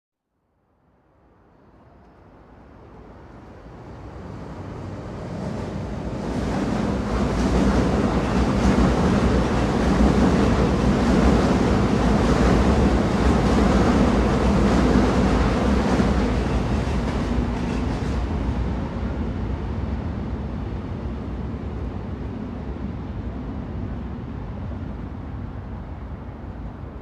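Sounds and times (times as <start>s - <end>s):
train rumbling and rattling: 2.8s - 27.0s.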